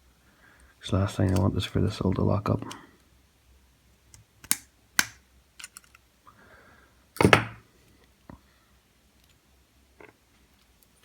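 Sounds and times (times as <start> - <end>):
lockpicking tools clicking: 4.1 - 6.0
knock on work surface: 7.2 - 7.6.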